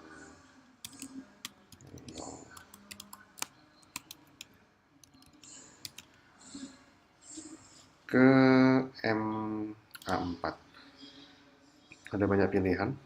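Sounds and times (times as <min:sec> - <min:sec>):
computer mouse clicking: 0:00.8 - 0:06.2.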